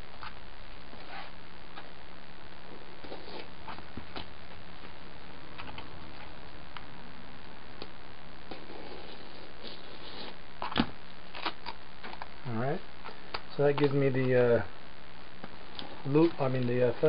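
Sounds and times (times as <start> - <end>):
low hum: 0.0 - 17.0.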